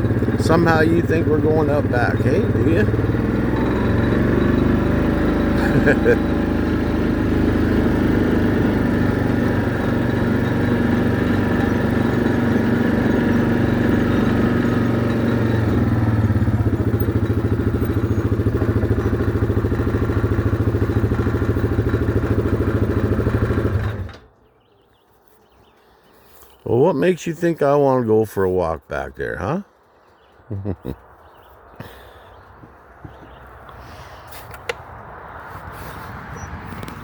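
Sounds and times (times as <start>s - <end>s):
small engine idling: 0.0s - 24.8s, 29.7s - 36.0s.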